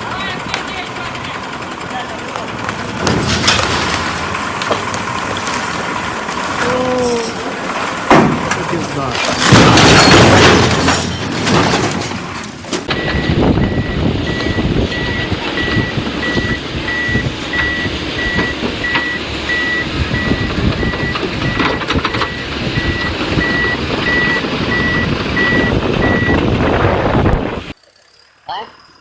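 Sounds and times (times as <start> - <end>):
machine engine rumble: 0.0 - 27.8
reversing alarm beeping: 12.9 - 26.4.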